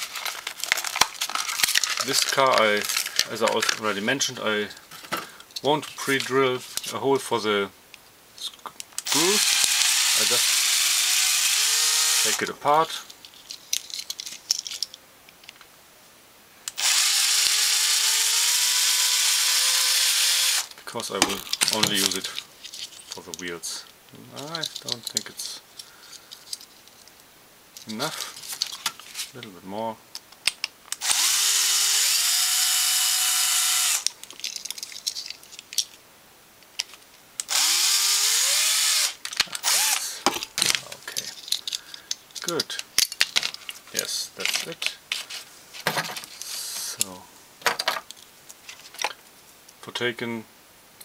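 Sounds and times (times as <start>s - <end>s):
cordless drill whining: 9.0s - 12.4s, 16.7s - 20.7s, 31.0s - 34.1s, 37.4s - 40.2s
clicks and knocks of handling: 40.2s - 46.5s.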